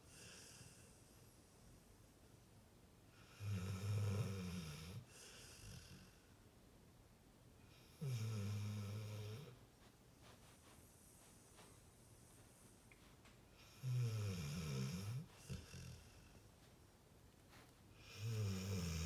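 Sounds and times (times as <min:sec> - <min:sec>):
dog snoring: 0:03.2 - 0:06.2, 0:07.8 - 0:09.6, 0:13.6 - 0:16.4, 0:18.0 - 0:19.0.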